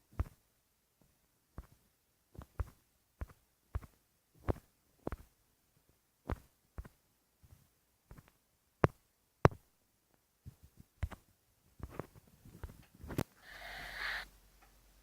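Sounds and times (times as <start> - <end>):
hissy rustle: 13.4 - 14.3.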